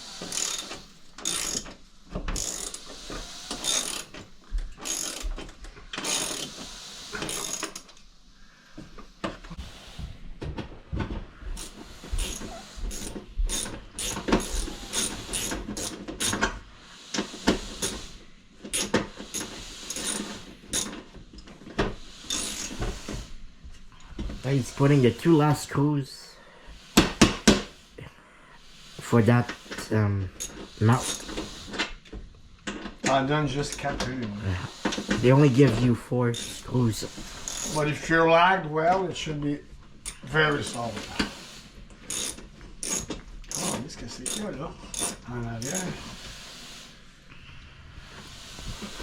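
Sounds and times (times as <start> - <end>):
ratchet wrench clicking: 0.2 - 1.7, 2.4 - 2.9, 3.5 - 4.1, 4.8 - 5.3, 6.0 - 6.5, 22.3 - 22.8, 42.1 - 45.8.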